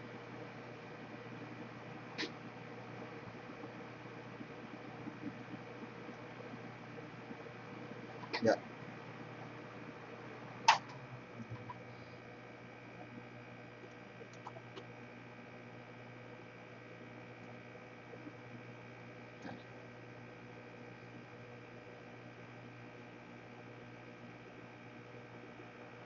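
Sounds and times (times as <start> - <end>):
electrical hum: 0.0 - 26.0.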